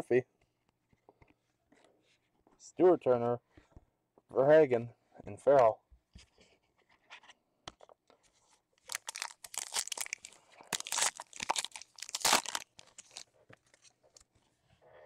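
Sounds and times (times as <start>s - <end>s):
wrapper tearing and crinkling: 8.8s - 13.8s.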